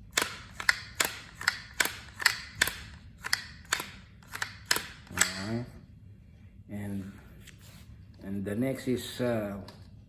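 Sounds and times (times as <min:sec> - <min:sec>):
rifle bolt clicking: 0:00.2 - 0:05.6.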